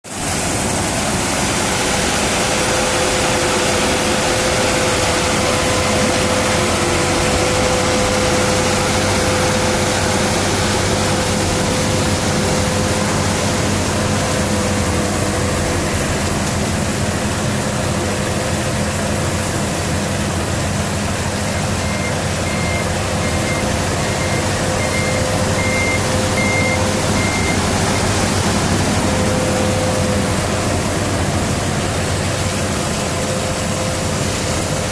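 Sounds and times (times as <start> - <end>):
combine harvester engine hum: 0.1 - 34.9
short high beeps: 21.6 - 28.2.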